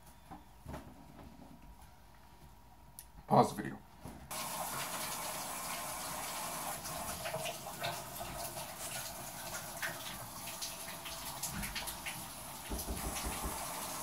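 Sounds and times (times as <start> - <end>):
tap water running: 4.3 - 14.0.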